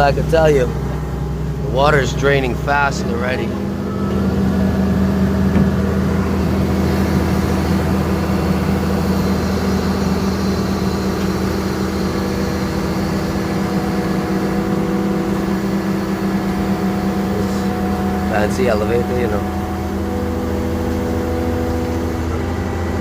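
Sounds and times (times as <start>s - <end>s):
diesel engine humming: 0.0s - 23.0s.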